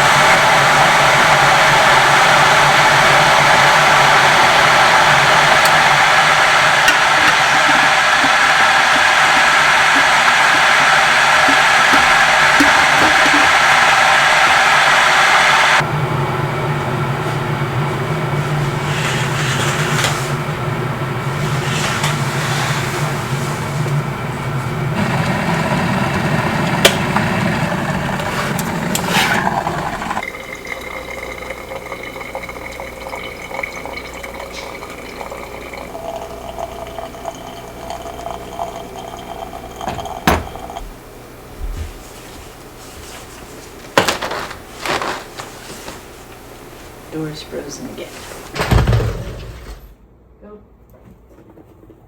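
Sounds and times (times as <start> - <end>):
water filling a container: 0.0 - 15.8, 25.0 - 40.8.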